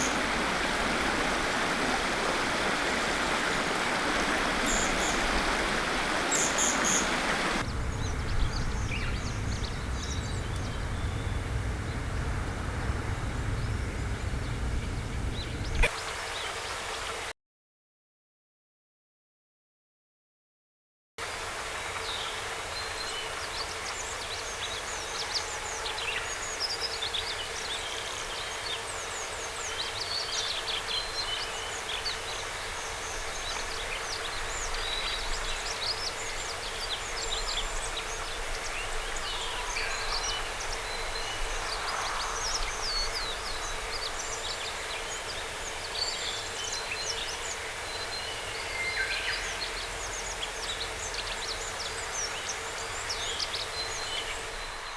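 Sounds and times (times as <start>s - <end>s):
outdoor background noise: 0.0s - 17.3s, 21.2s - 54.9s
wild birds chirping and singing: 4.5s - 15.9s, 23.0s - 54.9s.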